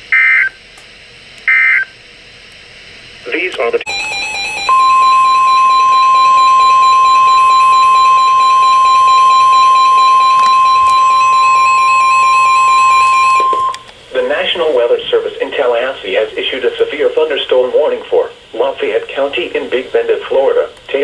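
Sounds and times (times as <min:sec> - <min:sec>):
steady high alarm beep: 0:03.9 - 0:13.8.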